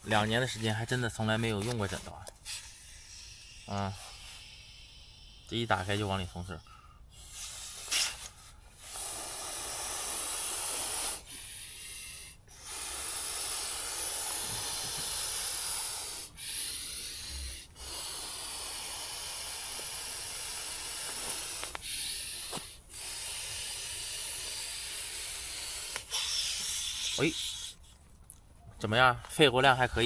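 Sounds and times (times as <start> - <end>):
person blowing into inflatable pillow: 7.1 - 27.6.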